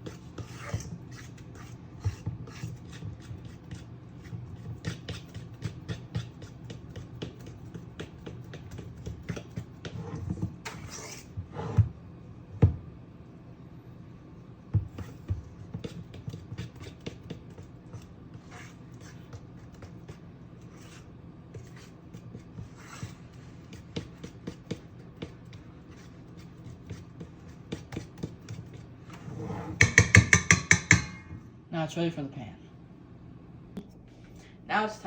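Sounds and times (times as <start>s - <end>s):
batter stirred in a bowl: 0.0s - 12.8s, 14.3s - 31.3s
steady low hum: 0.0s - 35.0s
utensil knocking against bowl: 29.8s - 31.4s.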